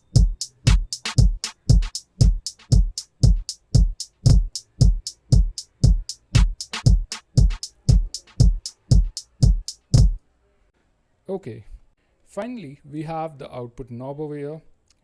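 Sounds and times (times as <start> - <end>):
bright hi-hat hits: 0.0 - 10.2
deep kick drum: 0.0 - 10.2.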